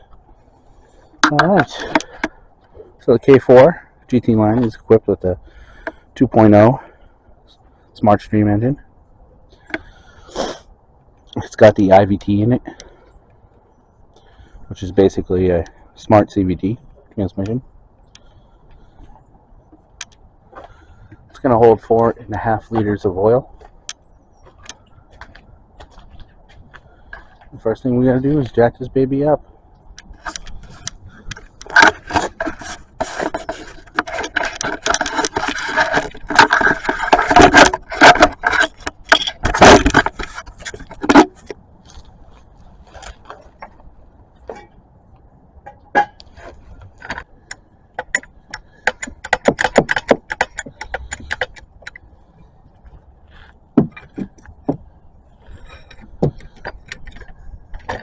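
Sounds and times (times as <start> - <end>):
metal car jack scraping and clanking: 1.2 - 2.4, 30.2 - 41.6, 45.7 - 52.0, 53.3 - 58.0.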